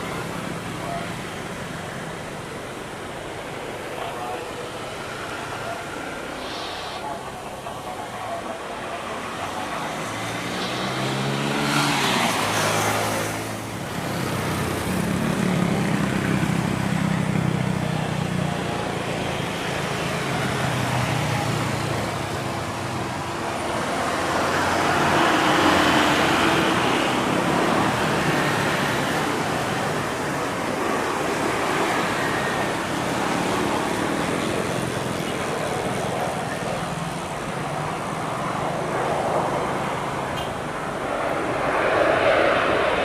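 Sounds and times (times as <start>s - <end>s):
jet engines droning: 0.0s - 43.0s
rushing swell: 3.4s - 14.0s, 38.8s - 43.0s.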